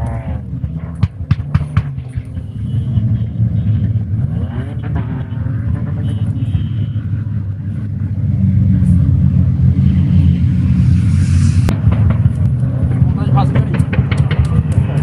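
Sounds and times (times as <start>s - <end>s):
vehicle engine rumbling: 0.0s - 15.0s
hiss: 11.0s - 11.7s.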